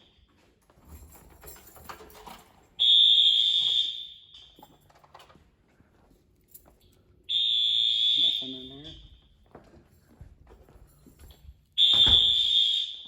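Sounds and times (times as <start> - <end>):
high-pitched fire alarm horn: 2.8 - 4.5, 7.3 - 9.1, 11.8 - 13.0.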